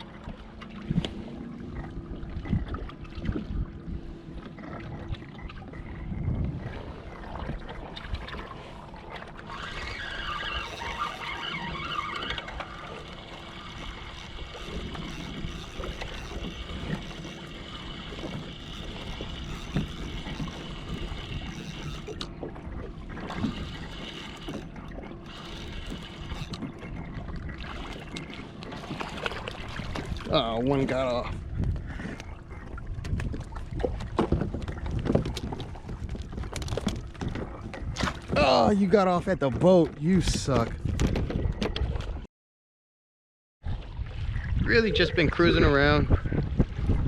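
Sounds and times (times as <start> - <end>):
water and wind rumble: 0.0 - 42.3, 43.6 - 47.0
small water splashes: 4.5 - 38.6
high-pitched whirring: 9.5 - 22.3, 23.3 - 26.8.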